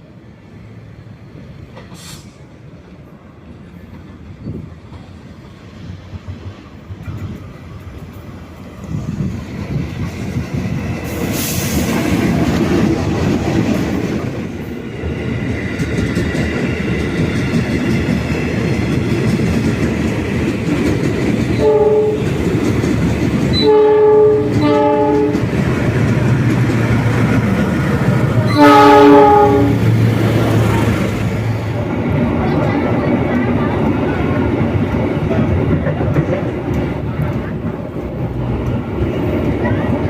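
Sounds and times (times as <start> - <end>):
train wheels rumbling on rails: 0.0 - 40.0
train horn blasts: 21.6 - 22.4, 23.5 - 25.5, 28.4 - 29.9.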